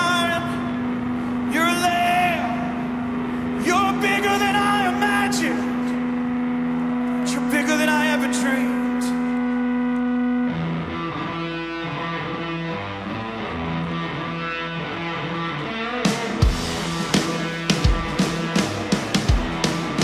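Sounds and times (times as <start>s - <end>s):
electric guitar with effects: 0.0s - 20.0s
live band music: 15.8s - 20.0s.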